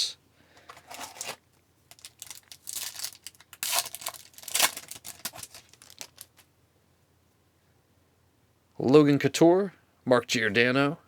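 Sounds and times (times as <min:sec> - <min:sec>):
foil wrapper tearing and crinkling: 0:00.8 - 0:06.4.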